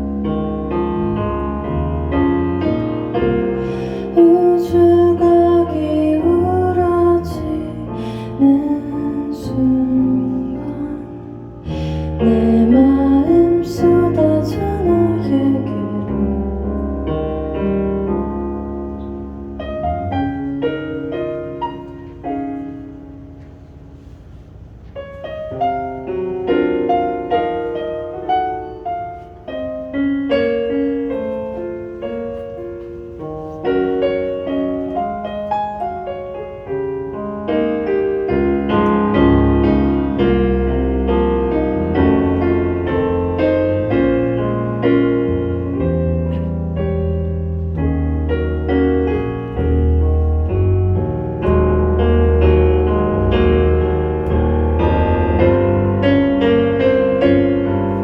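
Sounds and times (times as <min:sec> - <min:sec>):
piano playing a slow ballad: 0:00.0 - 0:58.0.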